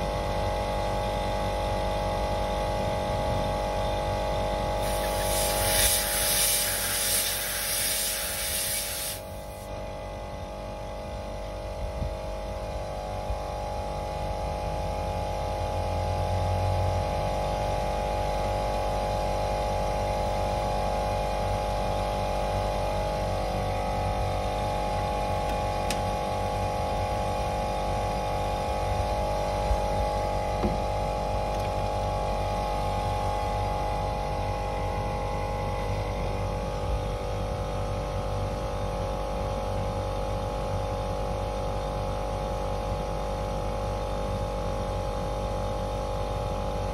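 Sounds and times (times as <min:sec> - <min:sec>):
loud hiss: 0:04.8 - 0:09.7
air conditioner humming: 0:04.8 - 0:10.0.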